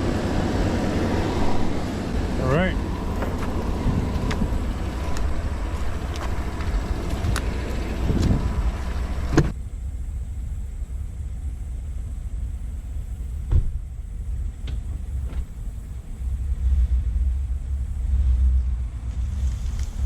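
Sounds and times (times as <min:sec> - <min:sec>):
truck engine rumbling: 0:00.0 - 0:20.0
sharp thump: 0:13.5 - 0:13.8.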